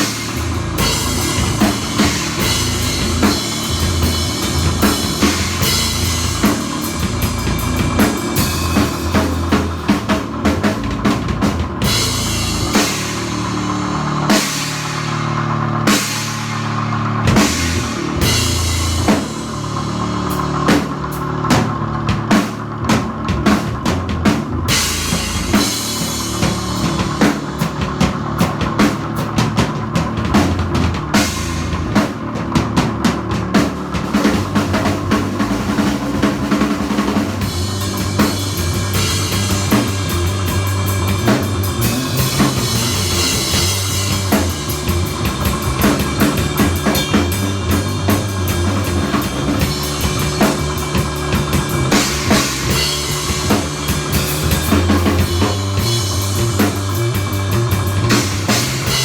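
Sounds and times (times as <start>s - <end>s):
rock music: 0.0s - 59.0s.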